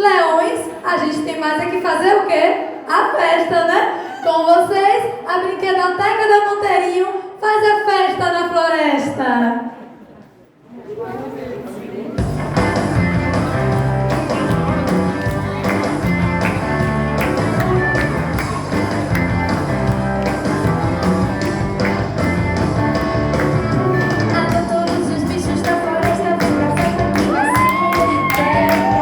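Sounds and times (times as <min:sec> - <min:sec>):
upbeat music with quick beat: 0:12.2 - 0:29.0.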